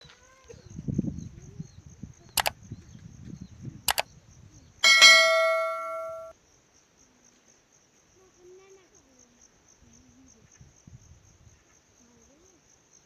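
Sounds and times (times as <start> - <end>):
metallic bell-like strike ringing: 4.8 - 6.3
sharp double clicks: 4.8 - 6.3.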